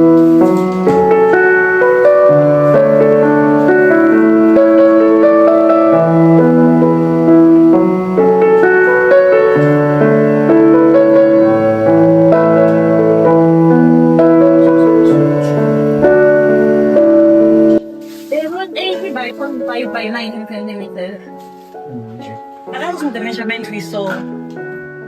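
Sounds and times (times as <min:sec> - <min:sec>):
calm piano piece: 0:00.0 - 0:25.0.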